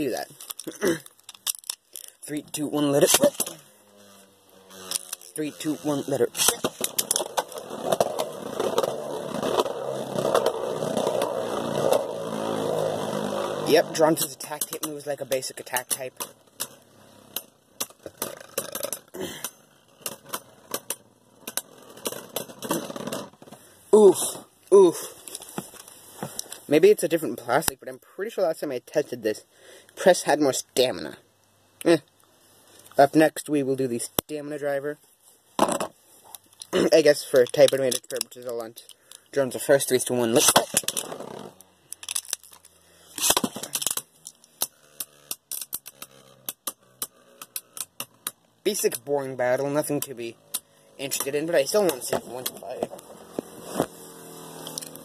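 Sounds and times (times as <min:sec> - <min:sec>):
spinning top launcher rip: 0:02.8 - 0:19.1, 0:43.1 - 0:49.1, 0:49.8 - 0:55.0.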